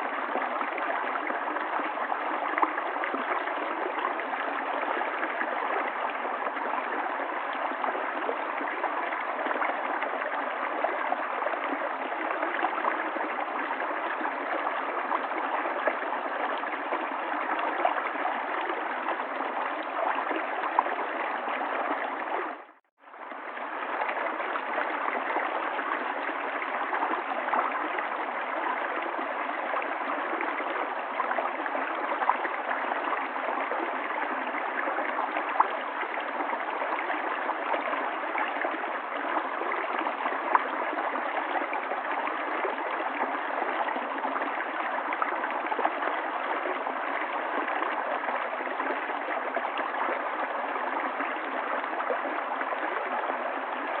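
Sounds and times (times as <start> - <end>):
river water flowing: 0.0 - 54.0.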